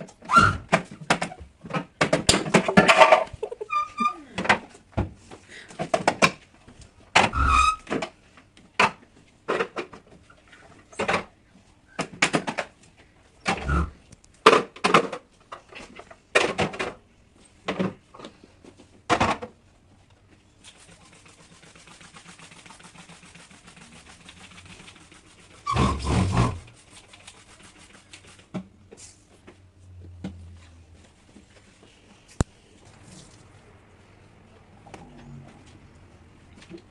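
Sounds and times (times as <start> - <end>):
kitchen items knocking and clattering: 0.7 - 3.7, 14.4 - 17.0.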